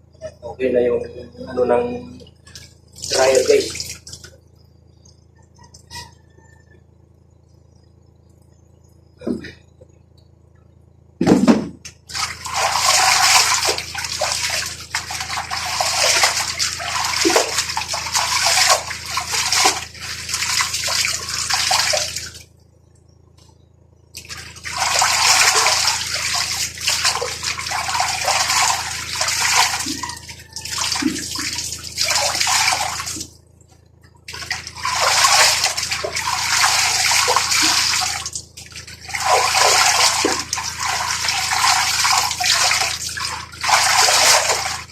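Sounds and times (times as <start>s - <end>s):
water running and splashing: 12.1s - 22.4s, 24.2s - 33.3s, 34.3s - 44.9s.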